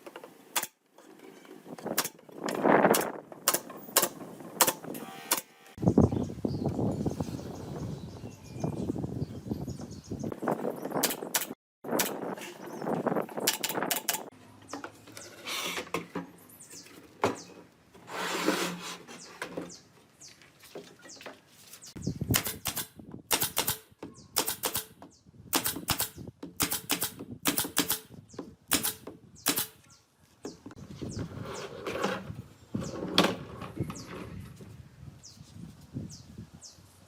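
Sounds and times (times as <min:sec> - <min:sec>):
knocks and scraping on wood: 0:12.0 - 0:22.0, 0:30.4 - 0:34.7.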